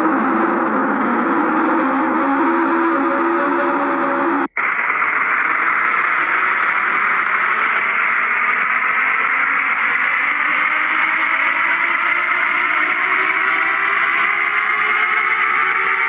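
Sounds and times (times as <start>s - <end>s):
radio static hiss: 3.9s - 8.7s.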